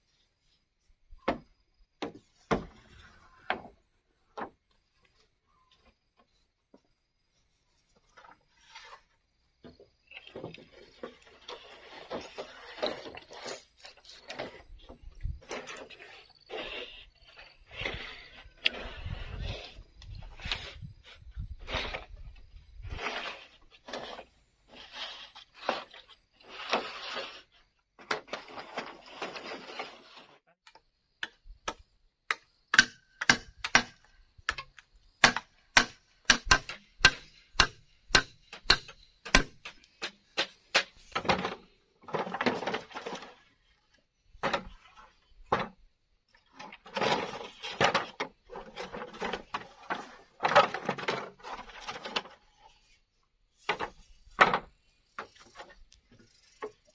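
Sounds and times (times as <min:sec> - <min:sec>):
sharp wooden knocks: 0:31.2 - 0:41.6.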